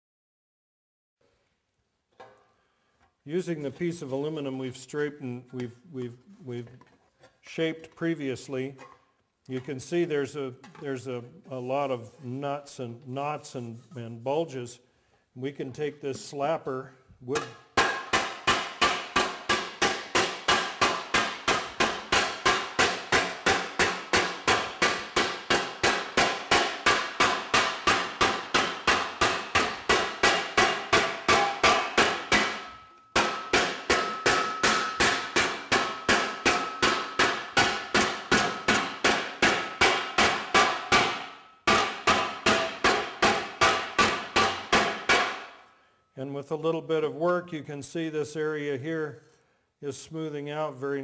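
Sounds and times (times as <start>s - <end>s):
slapper striking metal panel: 17.4s - 45.6s.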